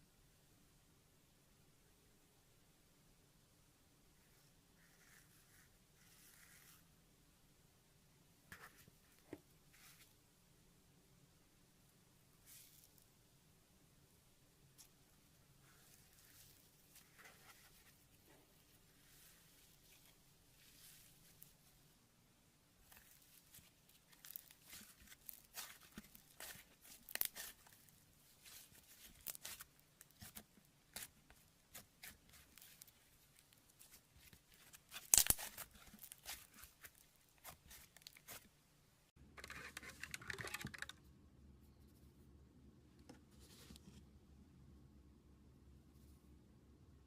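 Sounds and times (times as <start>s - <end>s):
slime crackling and popping: 22.9s - 31.1s, 31.7s - 38.4s.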